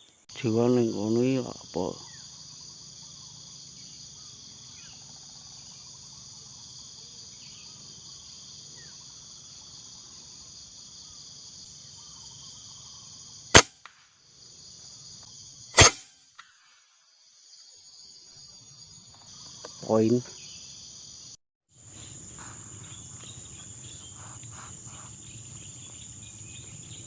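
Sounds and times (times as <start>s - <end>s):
insects droning: 0.0s - 27.0s
air rifle shots: 13.5s - 14.0s, 15.8s - 16.5s.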